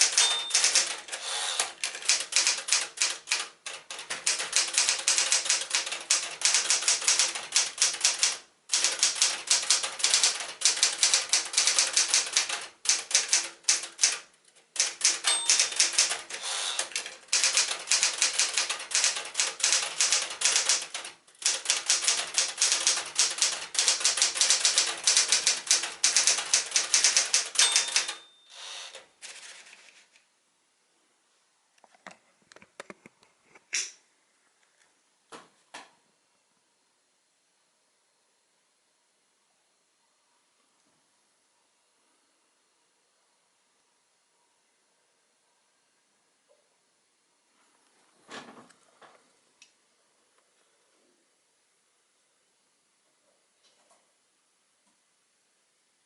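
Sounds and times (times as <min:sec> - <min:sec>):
typewriter typing: 0:00.0 - 0:28.3, 0:28.9 - 0:29.8.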